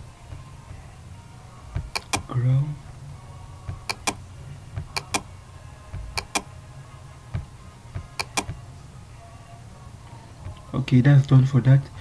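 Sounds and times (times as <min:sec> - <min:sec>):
low steady hum: 0:00.0 - 0:12.0
sharp clicks: 0:01.8 - 0:02.3, 0:03.8 - 0:04.2, 0:04.8 - 0:05.3, 0:06.0 - 0:06.5, 0:08.1 - 0:08.6.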